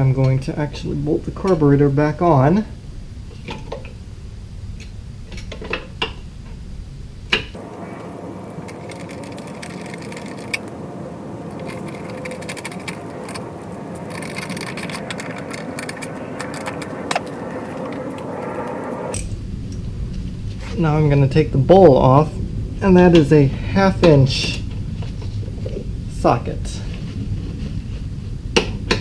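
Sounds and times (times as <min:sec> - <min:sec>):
small clicks and scraping: 0:07.6 - 0:19.3.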